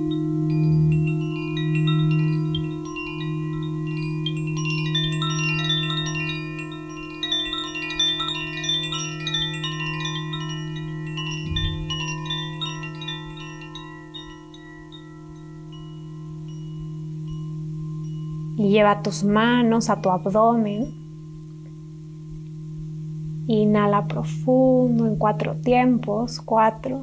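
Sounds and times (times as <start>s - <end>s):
high chimes tinkling: 0.0s - 27.0s
singing bowls droning: 0.0s - 27.0s
soft low thump: 11.4s - 11.9s.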